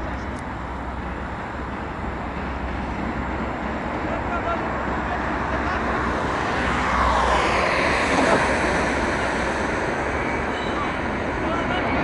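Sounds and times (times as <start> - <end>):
jet flying past: 2.6 - 12.0
high whine falling in pitch: 5.6 - 12.0.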